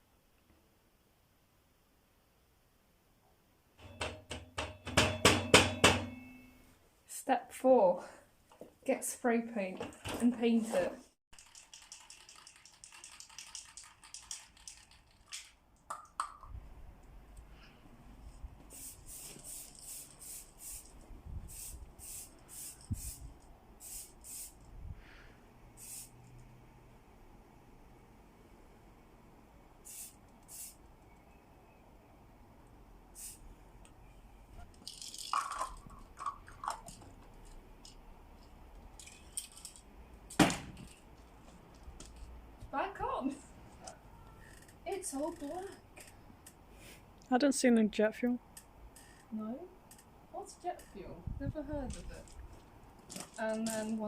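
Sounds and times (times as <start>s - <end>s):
spray can rattling: 11.4s - 16.2s, 18.7s - 24.7s, 25.8s - 26.1s, 29.9s - 30.8s, 33.2s - 33.4s, 34.8s - 38.0s, 53.1s - 54.0s
can being handled clicks and knocks: 15.3s - 16.5s, 35.2s - 37.0s
short bursts of spray: 18.7s - 24.7s, 25.8s - 26.4s, 29.8s - 30.8s, 33.1s - 33.4s.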